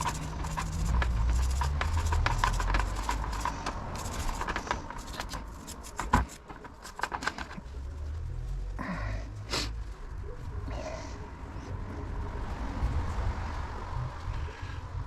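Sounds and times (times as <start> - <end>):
rag rubbing and scraping: 0.0 - 7.7.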